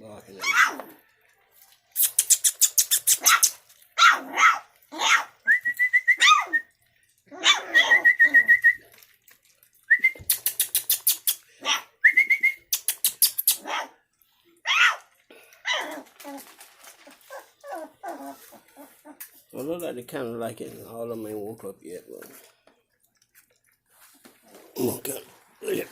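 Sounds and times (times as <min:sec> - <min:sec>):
puppies yipping: 0:00.4 - 0:01.0, 0:02.2 - 0:05.4, 0:06.1 - 0:06.6, 0:07.3 - 0:08.4, 0:14.7 - 0:19.3
puppies lapping food: 0:00.4 - 0:25.9
puppies whining: 0:07.3 - 0:08.8, 0:15.6 - 0:19.4.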